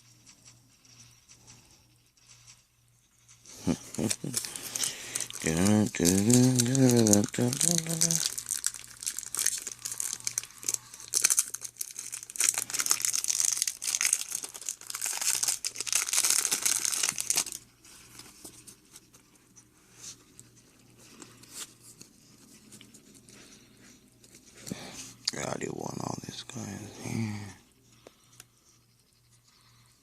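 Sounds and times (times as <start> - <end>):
foil wrapper tearing and crinkling: 3.6 - 17.6.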